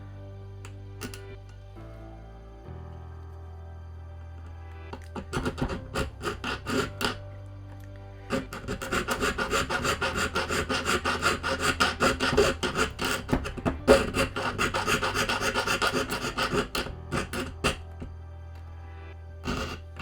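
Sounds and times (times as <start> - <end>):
saw rasping through metal: 5.0 - 7.2, 8.3 - 18.1, 19.4 - 20.0.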